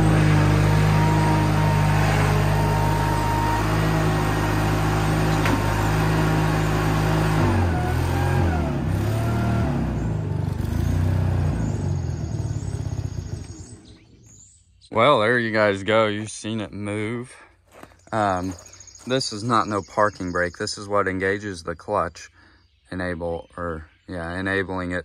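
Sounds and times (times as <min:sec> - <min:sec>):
skid steer engine running: 0:00.0 - 0:14.4.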